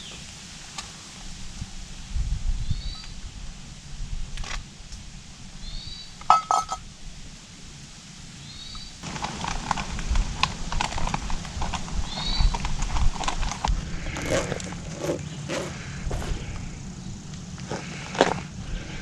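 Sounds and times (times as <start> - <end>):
small bird calling: 12.0 - 12.6, 13.8 - 18.1.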